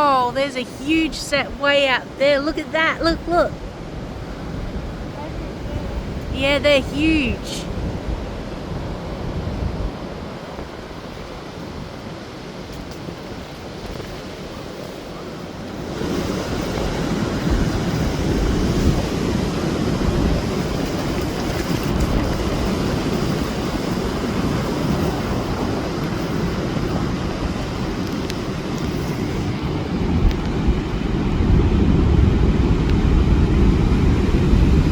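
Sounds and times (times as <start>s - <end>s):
heavy surf waves breaking: 0.0s - 34.9s
wind buffeting microphone: 0.0s - 34.9s.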